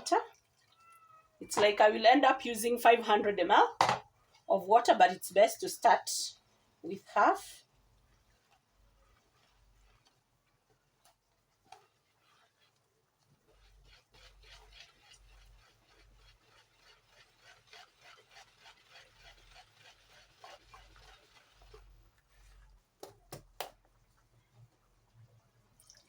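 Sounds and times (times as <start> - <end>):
batter stirred in bowl: 7.2 - 25.1.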